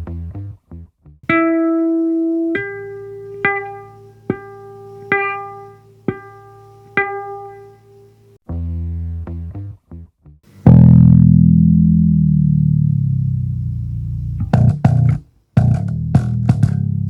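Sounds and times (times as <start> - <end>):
bass guitar ringing notes: 1.3 - 8.4, 10.7 - 17.0.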